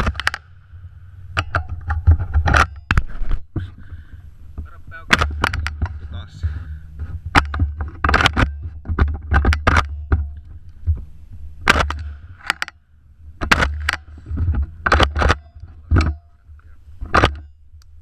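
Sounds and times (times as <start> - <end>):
shotgun shots: 11.6 - 12.2.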